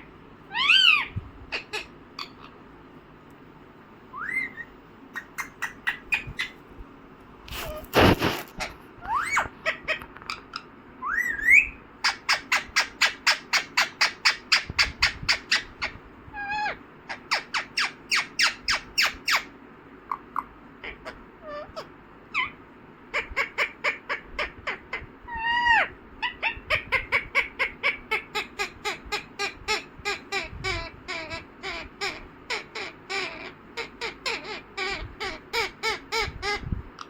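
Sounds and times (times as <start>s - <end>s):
parrot whistled calls: 0.5s - 2.4s, 4.1s - 6.6s, 9.1s - 9.9s, 11.0s - 19.5s
parrot squawking: 0.5s - 2.6s, 4.1s - 6.6s, 7.6s - 19.5s, 20.1s - 36.6s.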